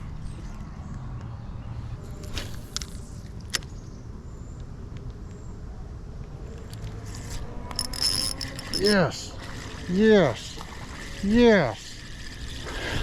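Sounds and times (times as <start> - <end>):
sharp clicks and ticks: 7.7 - 9.0.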